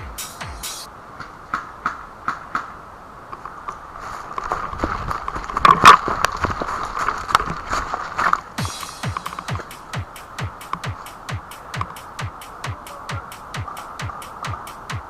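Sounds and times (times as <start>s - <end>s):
electronic music: 0.0s - 0.9s, 8.6s - 15.0s
sharp clicks: 9.1s - 15.0s.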